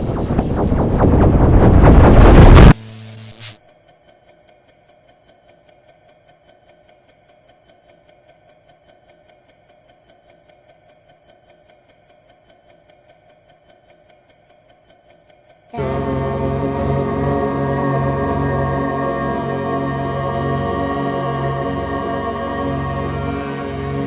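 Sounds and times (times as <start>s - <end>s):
clock ticking: 3.6s - 24.0s
faint steady hum: 15.7s - 24.0s.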